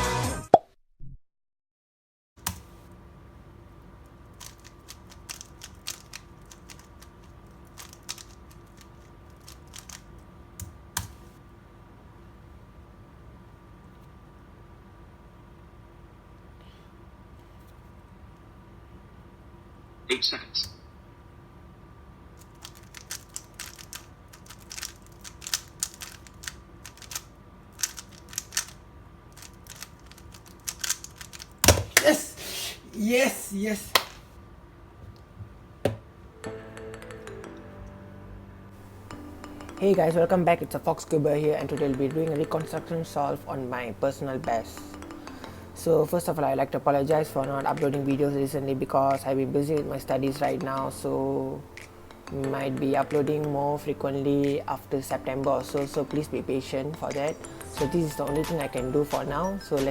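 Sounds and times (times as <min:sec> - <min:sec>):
plastic puzzle cube clicking: 0:04.3 - 0:11.2, 0:22.4 - 0:28.8, 0:29.4 - 0:31.9.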